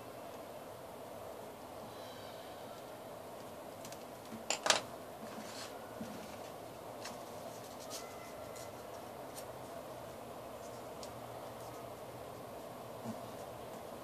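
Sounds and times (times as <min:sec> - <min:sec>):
steady background hiss: 0:00.0 - 0:14.0
paper crackling and rustling: 0:05.2 - 0:09.8.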